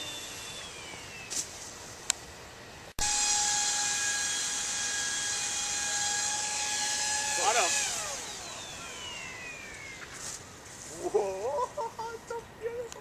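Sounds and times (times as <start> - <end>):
model airplane motor whine: 0.0 - 1.8, 3.0 - 10.6.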